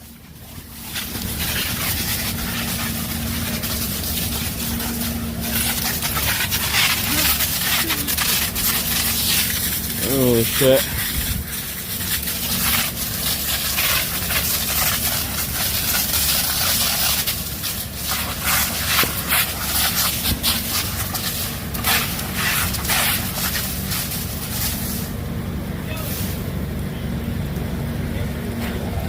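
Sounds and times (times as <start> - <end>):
low rumble: 0.0 - 18.6
fire crackling and popping: 0.0 - 29.0.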